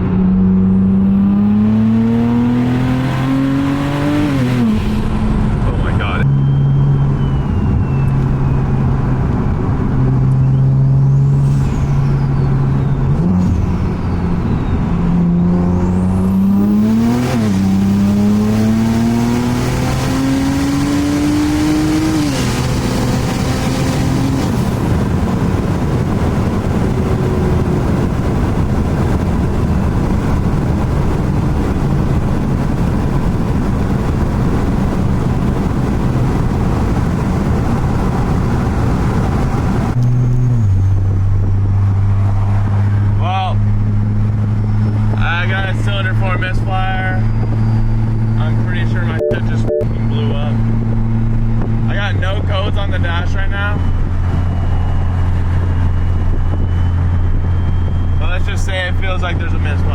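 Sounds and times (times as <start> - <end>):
car engine accelerating hard: 0.0 - 59.9
road noise: 0.0 - 59.9.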